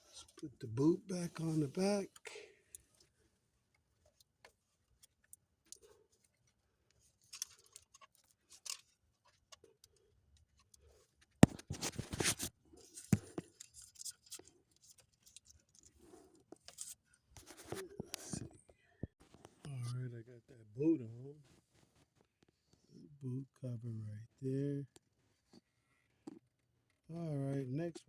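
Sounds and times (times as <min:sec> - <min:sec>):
rustling handling noise: 0:10.6 - 0:19.6
rubber boot clicks: 0:11.4 - 0:12.4.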